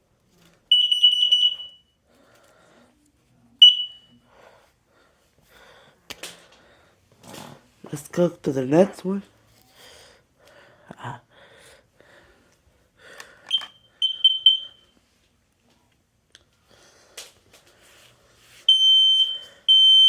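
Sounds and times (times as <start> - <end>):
loud steady alarm beep: 0.7 - 2.0, 3.6 - 4.2, 13.5 - 14.9, 18.7 - 20.0.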